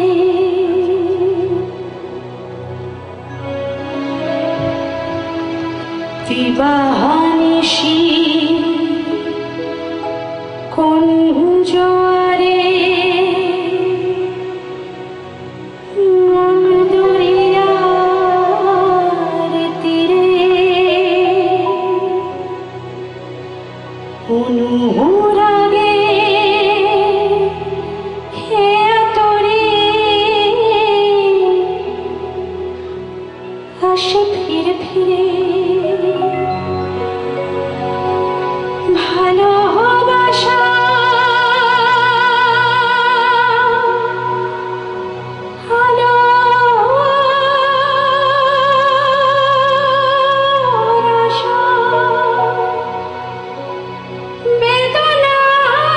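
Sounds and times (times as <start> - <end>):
keyboard accompaniment: 0.0 - 55.9
woman singing with vibrato: 6.2 - 9.7, 16.0 - 22.9, 24.3 - 32.7, 33.8 - 36.6, 38.8 - 53.5, 54.4 - 55.9.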